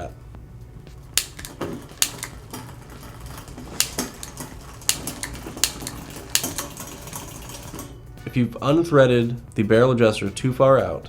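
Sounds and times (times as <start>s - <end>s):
bicycle gear shifter clicks: 1.2s - 7.9s
bicycle chain moving across cogs: 1.2s - 8.1s.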